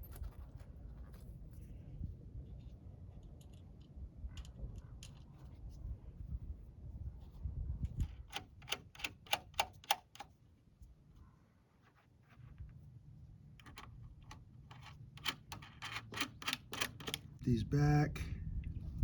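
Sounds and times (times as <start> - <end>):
sharp clicks: 8.3 - 10.3, 13.6 - 17.4.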